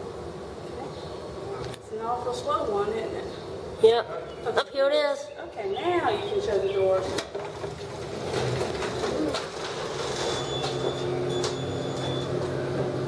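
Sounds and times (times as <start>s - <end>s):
elevator doors sliding open: 7.0s - 13.0s.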